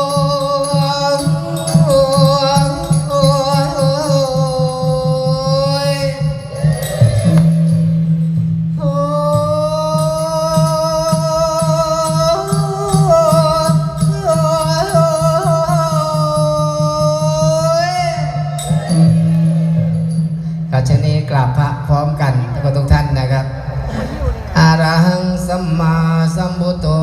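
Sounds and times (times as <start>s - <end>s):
wavering held melody: 0.0s - 25.8s
low drone: 22.2s - 26.2s.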